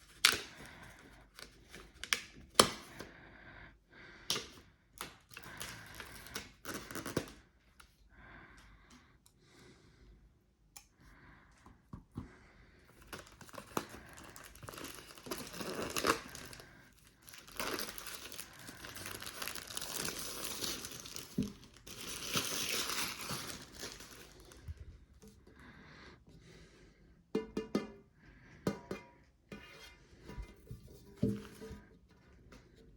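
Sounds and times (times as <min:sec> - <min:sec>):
packaging crinkling and tearing: 0:05.2 - 0:07.4, 0:13.0 - 0:24.8.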